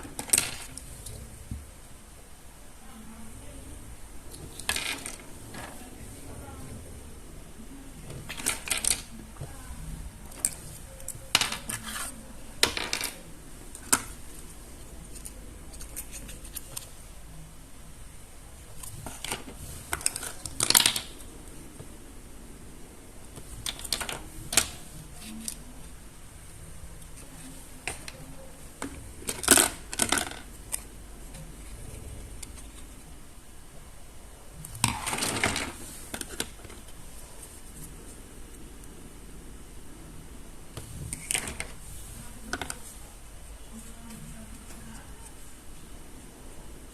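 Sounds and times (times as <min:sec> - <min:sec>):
plastic pieces clicking and clattering: 0:00.0 - 0:00.9, 0:04.3 - 0:05.8, 0:08.1 - 0:09.2, 0:10.3 - 0:13.2, 0:18.8 - 0:21.2, 0:23.6 - 0:25.7, 0:27.2 - 0:30.8, 0:34.7 - 0:36.8, 0:41.1 - 0:41.8.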